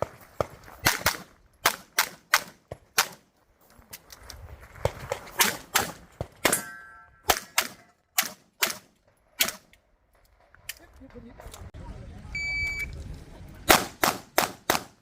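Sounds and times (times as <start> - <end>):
pistol shots: 0.8 - 3.2, 5.4 - 9.7, 13.7 - 15.0
steel target plate ringing: 6.5 - 7.9.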